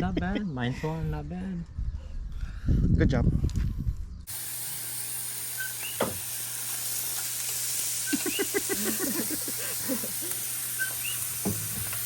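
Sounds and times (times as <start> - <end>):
meat sizzling on a grill: 4.3 - 12.0.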